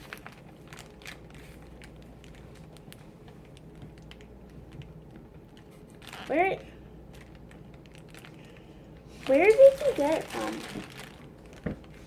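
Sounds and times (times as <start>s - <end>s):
toy packaging clicks and crinkles: 0.0s - 6.4s, 7.1s - 12.0s.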